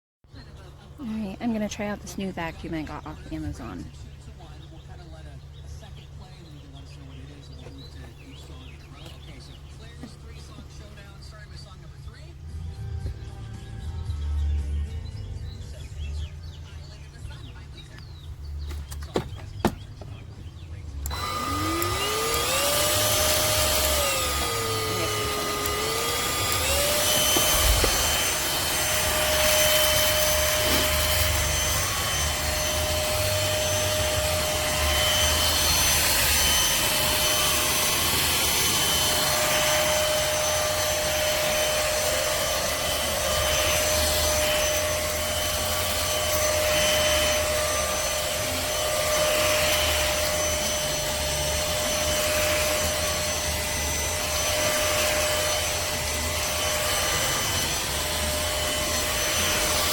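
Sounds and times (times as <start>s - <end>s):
stick vacuum motor whine: 0.4s - 12.2s, 15.7s - 59.9s.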